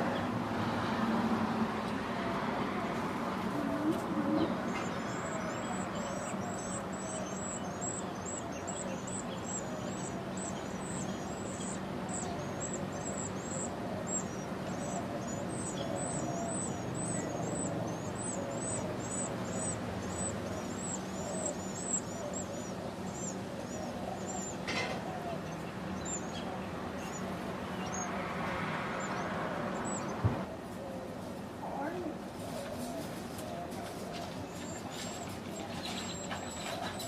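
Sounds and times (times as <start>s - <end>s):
bird chirping: 3.5s - 28.2s, 29.0s - 30.3s, 33.5s - 37.0s.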